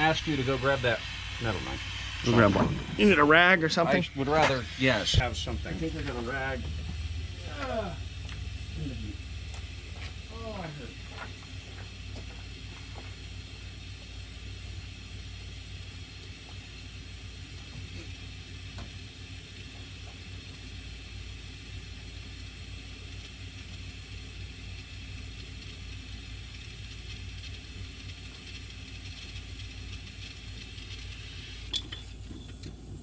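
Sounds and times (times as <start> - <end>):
faint steady hum: 0.0 - 33.0
low background rumble: 0.0 - 33.0
light clinks: 31.7 - 32.8.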